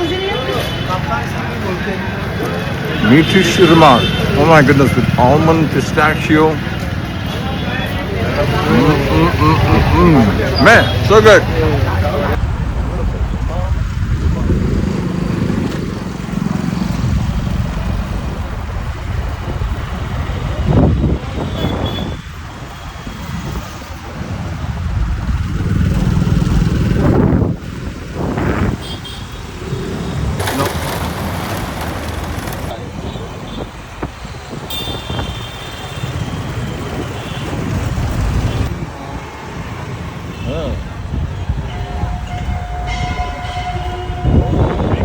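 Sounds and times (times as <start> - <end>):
road traffic: 0.0 - 45.0.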